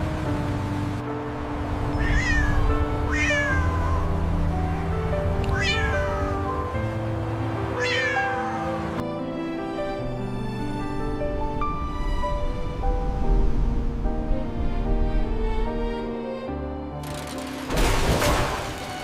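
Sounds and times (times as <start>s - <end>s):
background music: 0.0s - 19.0s
cat meowing: 1.9s - 4.3s, 5.4s - 6.8s, 7.7s - 8.9s.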